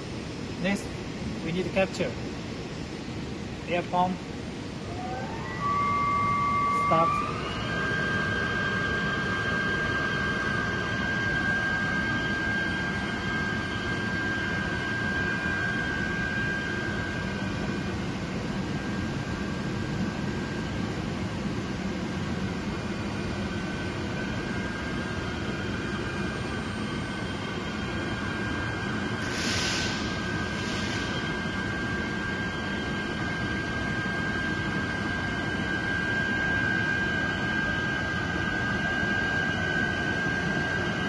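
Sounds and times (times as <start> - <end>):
high whine: 0.0 - 41.0
air pump whooshing hum: 21.5 - 41.0.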